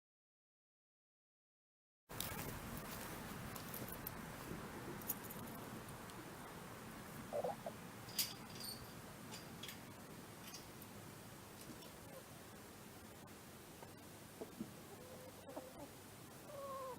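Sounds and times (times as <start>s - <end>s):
hens clucking: 7.2s - 7.9s, 13.8s - 16.9s.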